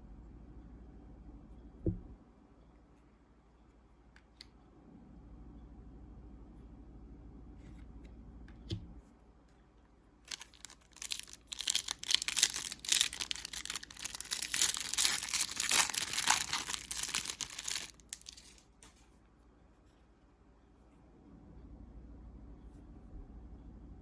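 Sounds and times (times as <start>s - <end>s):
plastic wrapper crinkling and tearing: 10.3s - 18.8s.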